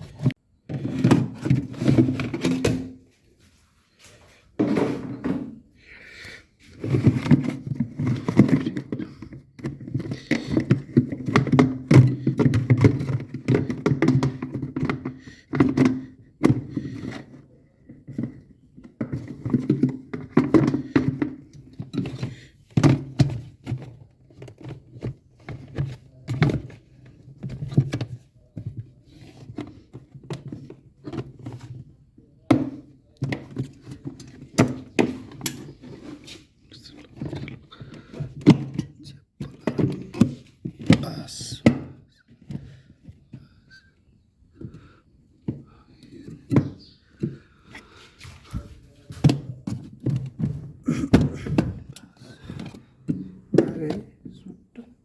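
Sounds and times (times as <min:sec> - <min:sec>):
irregular knocks and thunks: 0:49.2 - 0:54.1
knocks and thunks: 0:50.3 - 0:51.9.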